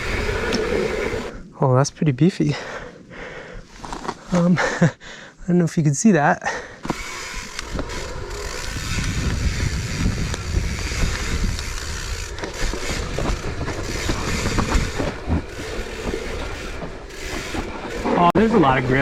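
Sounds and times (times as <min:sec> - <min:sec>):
bike rattling: 0:00.0 - 0:01.3, 0:06.6 - 0:19.0
bike tyres on dirt trail: 0:00.0 - 0:01.4, 0:06.4 - 0:19.0.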